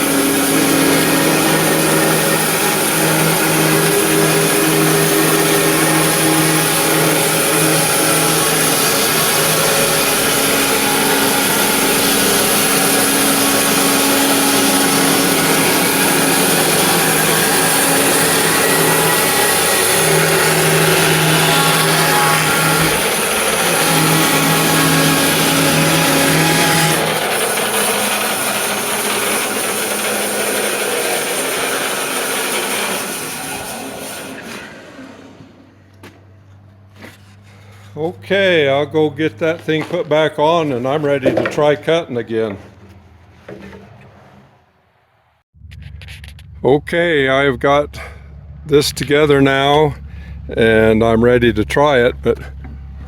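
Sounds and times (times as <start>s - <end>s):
machine motor humming: 0.0s - 35.7s.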